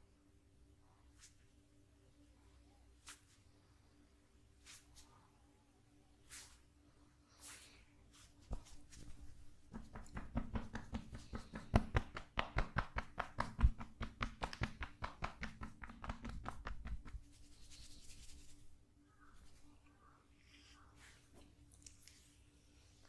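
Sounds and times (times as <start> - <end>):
soft rustling: 0.9 - 1.6, 2.7 - 5.3, 6.2 - 12.2, 13.1 - 23.0
hands tapping on body: 8.5 - 17.3.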